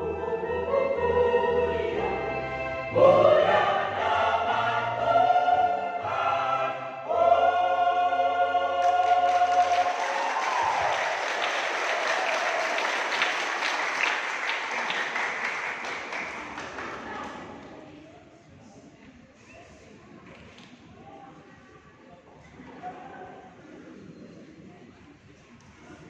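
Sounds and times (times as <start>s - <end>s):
church choir singing: 0.0s - 15.5s
audience applause: 8.8s - 17.5s.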